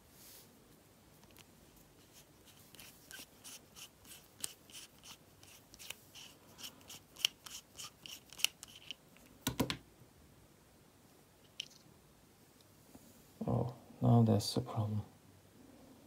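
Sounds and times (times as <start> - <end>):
hand tool scratching and clicking: 2.1 - 9.0.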